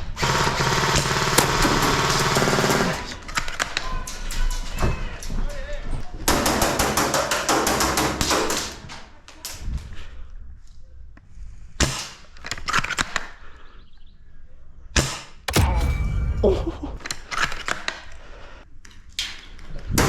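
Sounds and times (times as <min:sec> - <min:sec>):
airsoft guns firing: 0:00.0 - 0:03.5.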